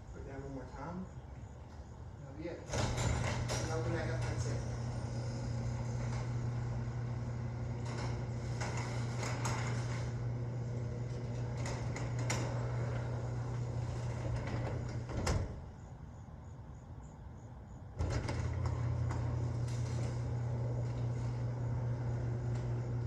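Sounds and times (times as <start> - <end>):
garage door opener clunk: 2.6 - 15.8, 18.0 - 23.0
garage door opener motor hum: 2.6 - 16.1, 17.8 - 23.0.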